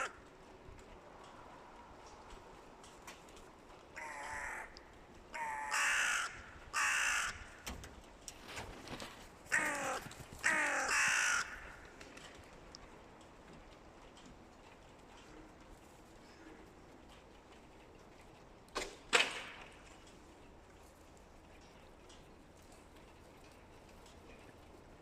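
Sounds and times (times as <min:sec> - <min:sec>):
crows cawing: 0:00.0 - 0:00.3, 0:04.0 - 0:07.6, 0:09.5 - 0:12.0.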